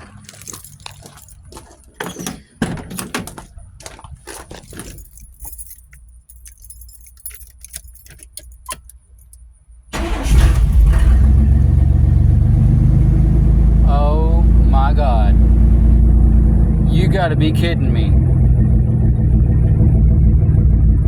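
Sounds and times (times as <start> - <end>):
keys jangling: 0.0 - 9.6
pickup engine starting and idling: 9.9 - 21.0.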